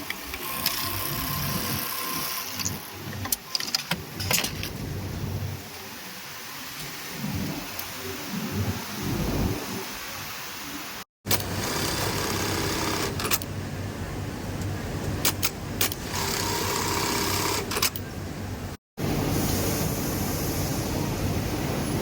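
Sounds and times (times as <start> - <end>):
sewing machine running: 0.4 - 2.8, 11.3 - 13.4, 15.9 - 18.0.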